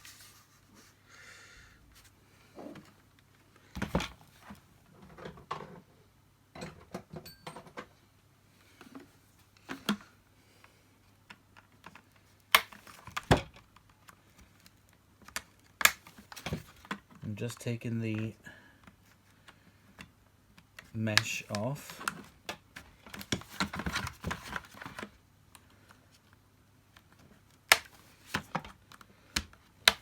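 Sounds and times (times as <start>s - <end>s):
plastic parts clicking and knocking: 19.9s - 25.2s, 27.0s - 30.0s.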